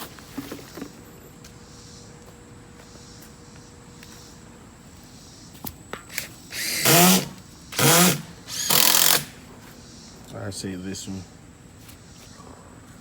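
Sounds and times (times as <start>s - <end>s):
power drill driving screws: 6.1s - 9.4s.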